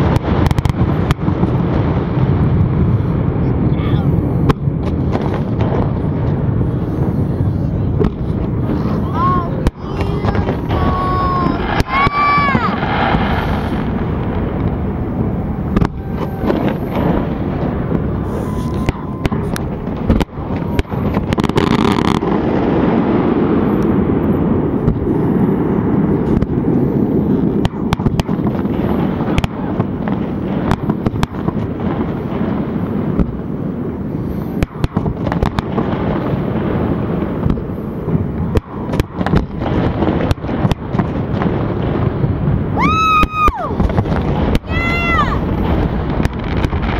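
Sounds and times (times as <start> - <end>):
continuous low rumble: 0.0 - 46.9
fireworks bangs and crackles: 0.0 - 46.9
faint firework whistles: 14.6 - 22.4.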